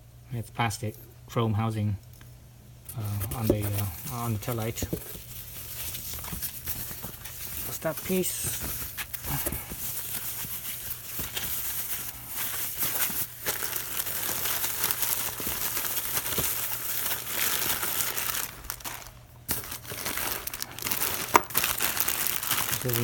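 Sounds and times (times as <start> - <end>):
plastic bag crinkling: 3.2 - 23.0.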